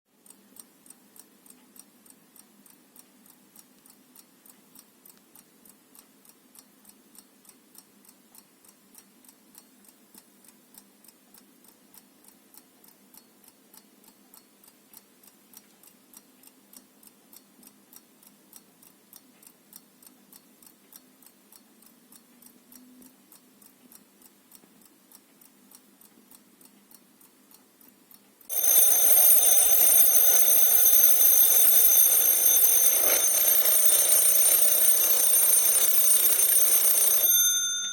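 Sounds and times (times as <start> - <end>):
alarm bell ringing: 28.5 - 37.9
alarm clock ticking: 28.5 - 37.9.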